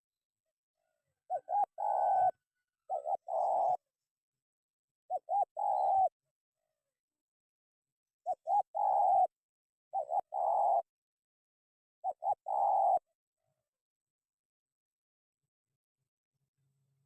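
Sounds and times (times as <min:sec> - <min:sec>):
dove cooing: 0:01.3 - 0:03.8, 0:05.1 - 0:06.2, 0:08.3 - 0:10.9, 0:12.0 - 0:13.1.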